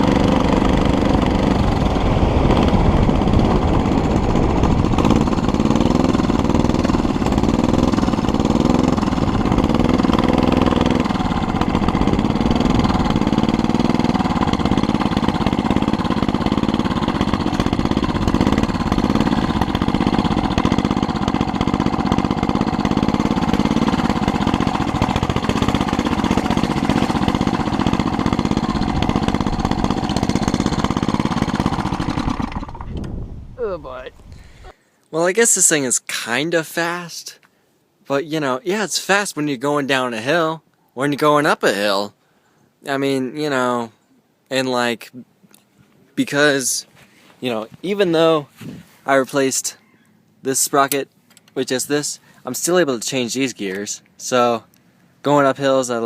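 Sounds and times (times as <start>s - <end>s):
small engine pulsing: 0.0s - 34.7s.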